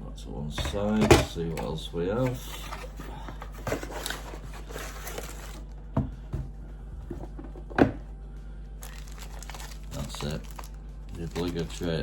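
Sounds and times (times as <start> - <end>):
steady low hum: 0.0 - 12.0
packaging rustling: 0.6 - 5.8, 8.8 - 12.0.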